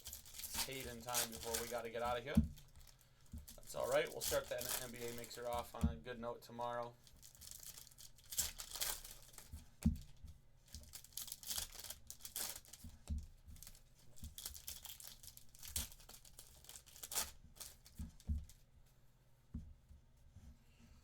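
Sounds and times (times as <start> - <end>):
packaging tearing and crinkling: 0.0 - 5.8, 7.1 - 9.5, 10.7 - 12.9, 13.6 - 18.0.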